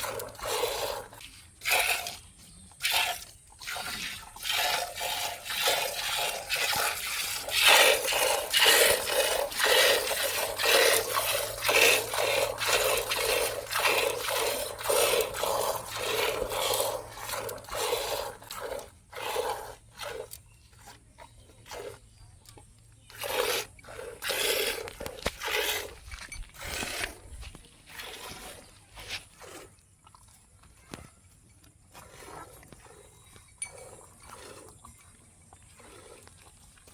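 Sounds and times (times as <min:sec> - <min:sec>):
milk squirting into a pail: 0:00.0 - 0:20.3.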